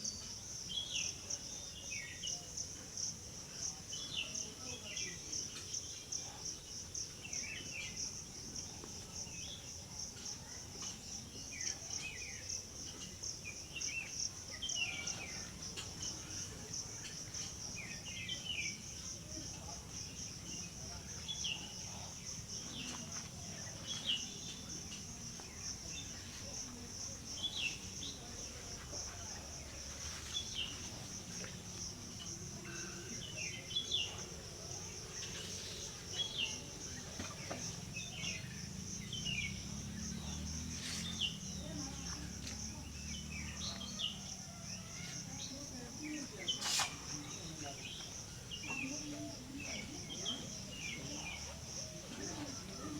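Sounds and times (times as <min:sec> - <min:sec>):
insects trilling: 0:00.0 - 0:52.9.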